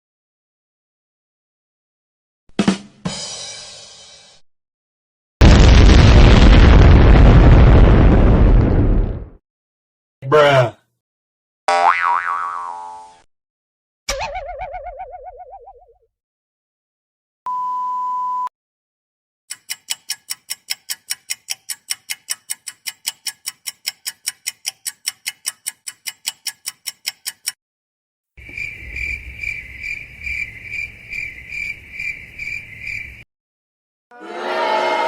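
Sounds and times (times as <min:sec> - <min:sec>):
steady censor beep: 0:17.5 - 0:18.5
rapid ticking: 0:19.5 - 0:27.6
cricket chirps: 0:28.4 - 0:33.2.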